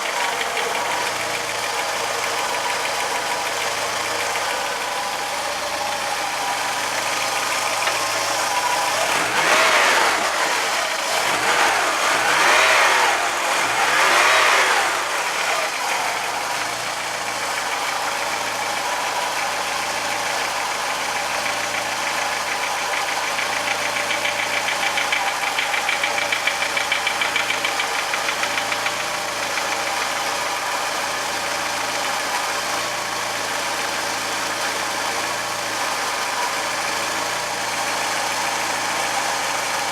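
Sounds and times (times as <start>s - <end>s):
car engine revving and idling: 0.0s - 39.9s
engine knocking: 0.0s - 39.9s.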